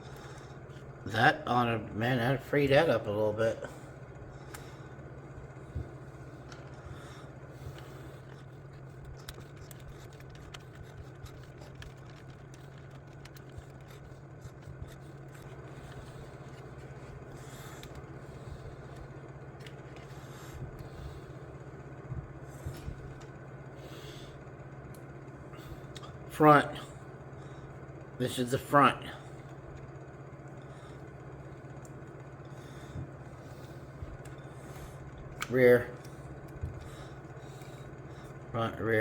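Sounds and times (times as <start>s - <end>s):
steady low hum: 0.0s - 39.0s
small parts clicking and tapping: 7.8s - 18.1s.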